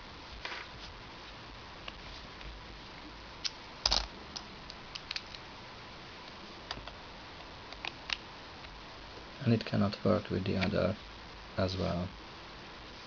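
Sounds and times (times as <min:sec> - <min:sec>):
plastic parts clicking: 0:03.8 - 0:05.4.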